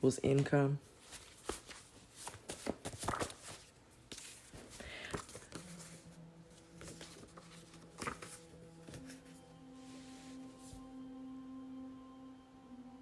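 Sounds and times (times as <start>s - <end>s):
cards tapping and rustling: 0.3s - 9.4s
low background music drone: 4.7s - 13.0s.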